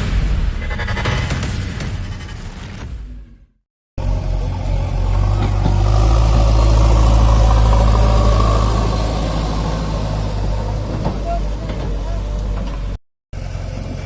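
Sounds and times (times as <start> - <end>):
diesel engine running: 4.0 - 14.0.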